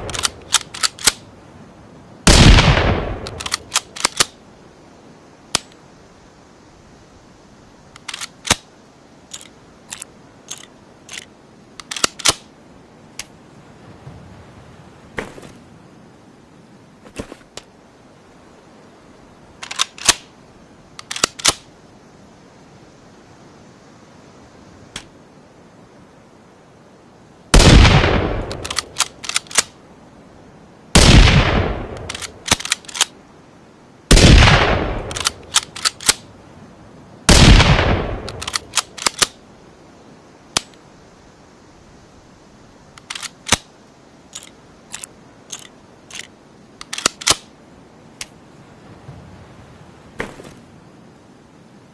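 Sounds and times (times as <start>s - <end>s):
sharp clicks: 0.0s - 1.2s, 3.2s - 4.4s, 7.9s - 8.7s, 9.3s - 12.5s, 21.0s - 21.6s, 28.4s - 29.7s, 31.9s - 33.1s, 35.0s - 36.2s, 38.2s - 39.4s, 42.9s - 43.7s, 44.3s - 47.5s
loud rifle shots: 2.3s - 3.6s, 27.6s - 28.7s, 31.0s - 32.6s, 34.1s - 35.3s, 37.3s - 38.6s.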